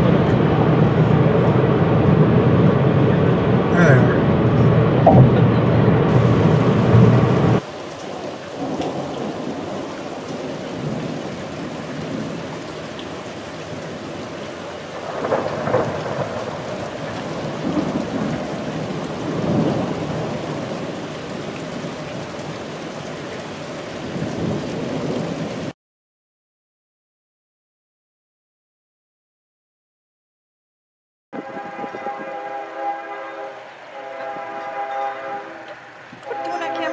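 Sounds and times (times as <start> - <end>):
rain falling: 0.0 - 25.8, 31.4 - 36.9
thunder rumbling: 4.2 - 25.7.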